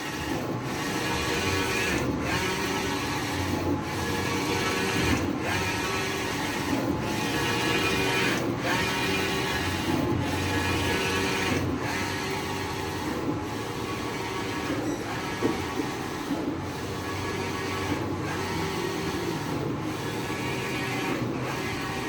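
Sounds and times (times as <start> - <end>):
printer carriage whirring: 0.0 - 22.0.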